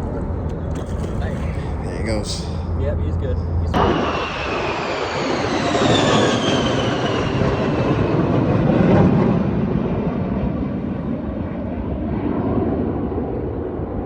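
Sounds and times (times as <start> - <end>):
faint falling whine: 0.0 - 8.0
passing engine rumble: 0.0 - 14.0.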